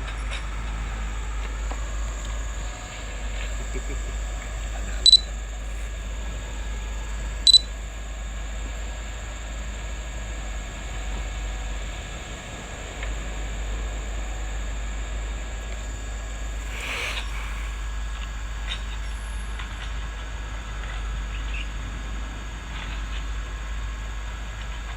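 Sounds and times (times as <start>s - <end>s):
backhoe engine rumbling: 0.0s - 19.2s
high-pitched beeps: 5.0s - 5.3s, 7.5s - 7.7s.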